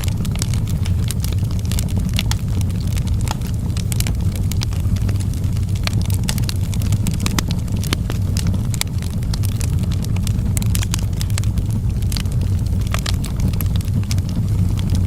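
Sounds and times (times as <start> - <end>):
burning logs crackling and popping: 0.0 - 15.0
low rumble of flames: 0.0 - 15.0.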